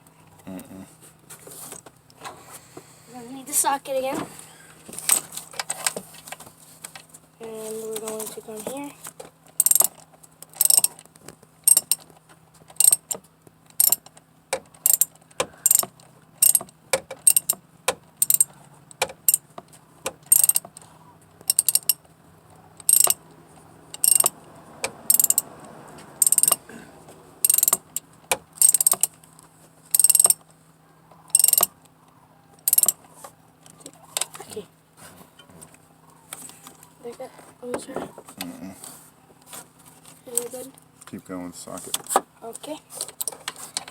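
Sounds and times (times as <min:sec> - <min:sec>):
ratchet wrench clicking: 0:09.6 - 0:11.0, 0:11.6 - 0:12.0, 0:12.7 - 0:17.6, 0:18.2 - 0:19.5, 0:20.3 - 0:20.8, 0:21.5 - 0:22.0, 0:22.8 - 0:23.2, 0:23.9 - 0:25.5, 0:26.2 - 0:26.6, 0:27.4 - 0:29.2, 0:29.9 - 0:30.4, 0:31.3 - 0:31.8, 0:32.6 - 0:33.0.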